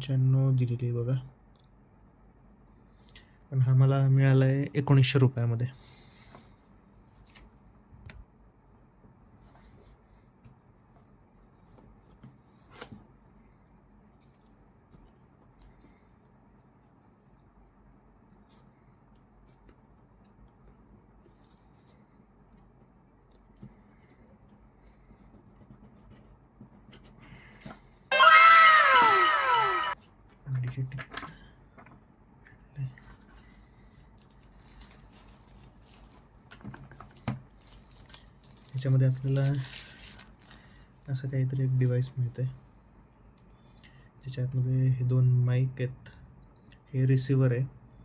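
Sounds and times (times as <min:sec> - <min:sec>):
cat meowing: 0:28.1 - 0:30.0.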